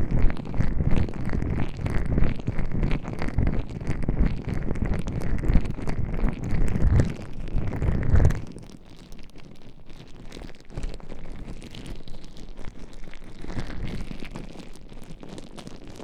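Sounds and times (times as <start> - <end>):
deep rumble: 4.8 - 8.6
slippery rubbing on microphone: 6.3 - 8.7.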